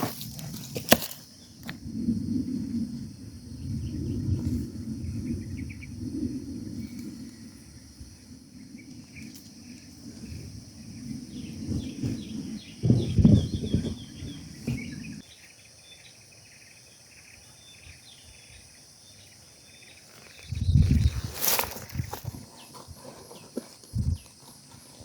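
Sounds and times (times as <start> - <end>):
wind rumble on microphone: 0.0 - 15.2, 17.7 - 25.0
insects droning: 0.0 - 25.0
birds chirping: 8.6 - 25.0.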